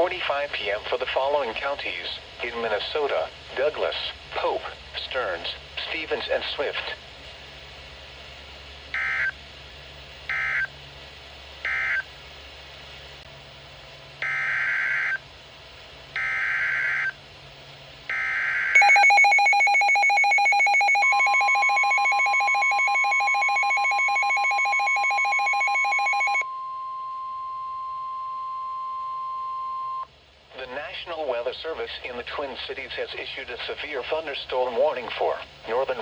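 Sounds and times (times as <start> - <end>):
steady warning alarm tone: 9.0 - 9.4, 10.3 - 10.7, 11.7 - 12.1, 14.2 - 15.2, 16.2 - 17.2, 18.1 - 30.0.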